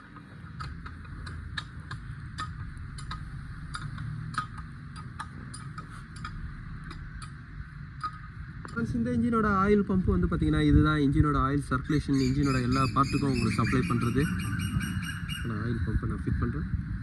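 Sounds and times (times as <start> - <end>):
engine turned by hand clicking: 0.0 - 7.4.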